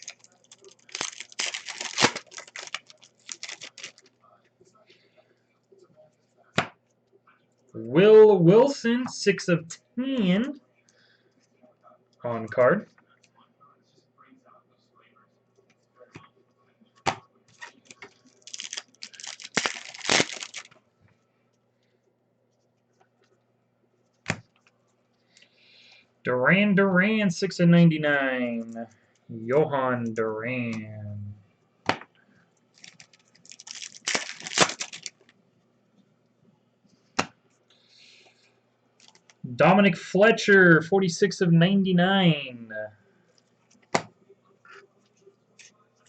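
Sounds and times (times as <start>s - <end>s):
foil wrapper crinkling and tearing: 0.0s - 4.1s, 17.6s - 20.8s, 32.7s - 35.3s, 39.0s - 39.4s.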